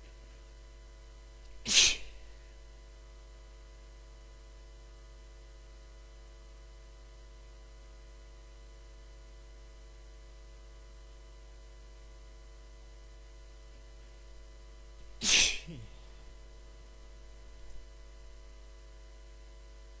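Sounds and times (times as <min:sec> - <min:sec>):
steady electrical hum: 0:00.0 - 0:20.0
man sneezing: 0:01.6 - 0:02.3, 0:15.2 - 0:16.2.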